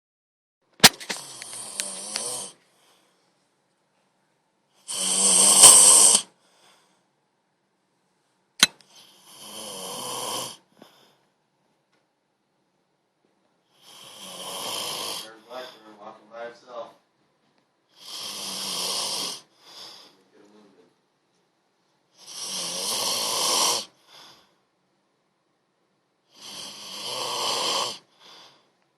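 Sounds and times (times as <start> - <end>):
sharp click: 0.8 - 2.3, 8.6 - 8.8
person snoring loudly: 1.2 - 2.6, 4.9 - 6.3, 9.2 - 10.6, 13.8 - 15.4, 18.0 - 19.5, 22.2 - 24.0, 26.3 - 28.1.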